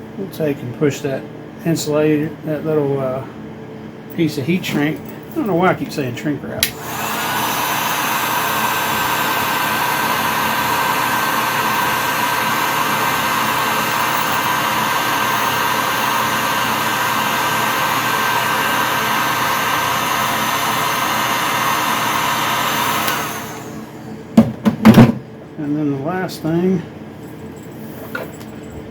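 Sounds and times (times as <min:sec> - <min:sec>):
electric hot-air blower running: 0:06.6 - 0:25.2.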